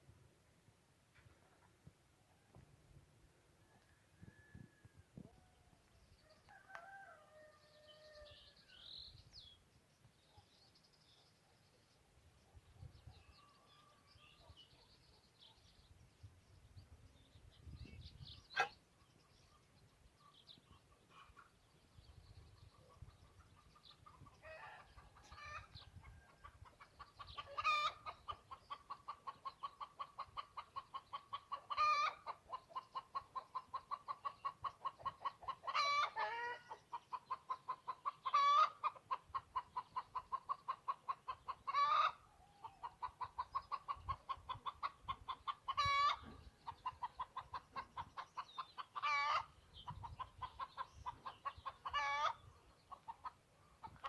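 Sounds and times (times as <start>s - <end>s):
chicken clucking: 22.7s - 54.0s.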